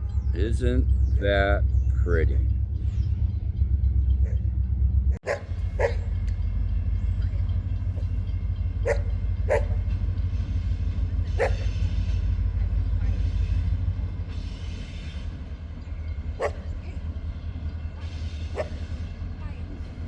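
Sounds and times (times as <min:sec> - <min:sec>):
train rumbling past: 0:00.0 - 0:20.0
dog barking: 0:05.2 - 0:06.1, 0:08.8 - 0:09.9, 0:11.3 - 0:11.8, 0:16.3 - 0:16.8, 0:18.4 - 0:18.8.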